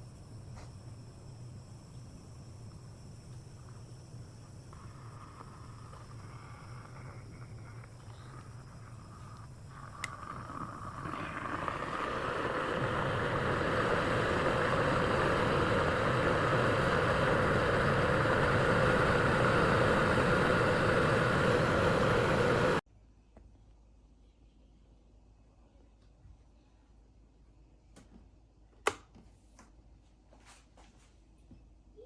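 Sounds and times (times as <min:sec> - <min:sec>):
water boiling in electric kettle: 0:00.0 - 0:22.8.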